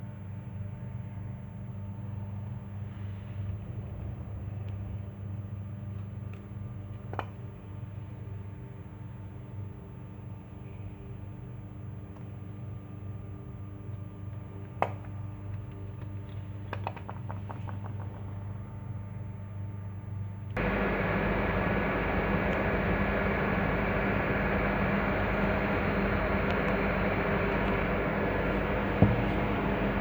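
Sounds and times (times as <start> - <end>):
engine running with low hum: 20.6 - 30.0.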